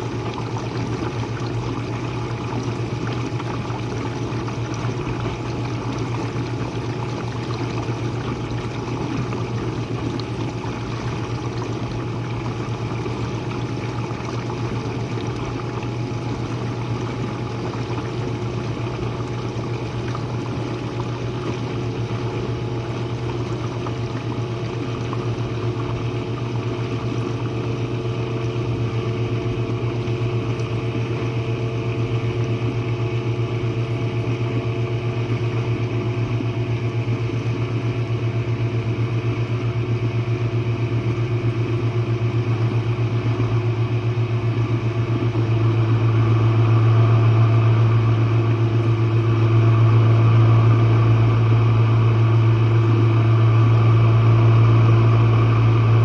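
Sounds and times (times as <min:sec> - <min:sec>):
dishwasher motor hum: 0:00.0 - 0:56.0.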